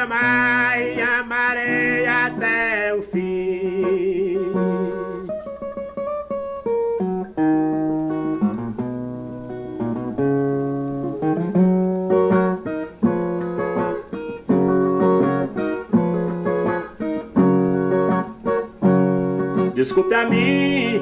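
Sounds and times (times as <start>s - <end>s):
steel-string guitar plucked and strummed: 0.0s - 21.0s.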